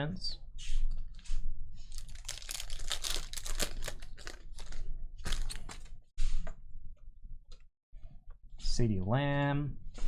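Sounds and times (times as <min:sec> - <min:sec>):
plastic wrappers crinkling: 0:01.8 - 0:06.0
pack being torn open: 0:02.0 - 0:05.8.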